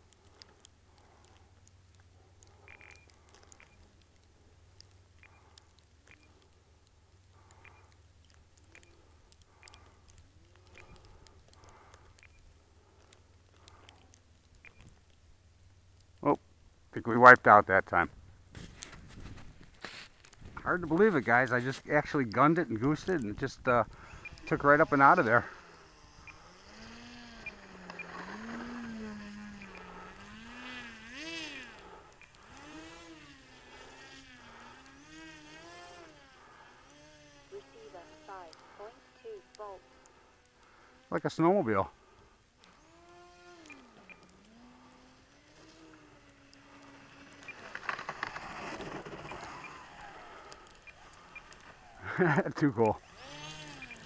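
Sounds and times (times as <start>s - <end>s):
light clicks: 0.0s - 15.2s
faint low hum: 0.0s - 54.0s
model plane motor buzzing: 20.6s - 41.2s, 41.9s - 54.0s.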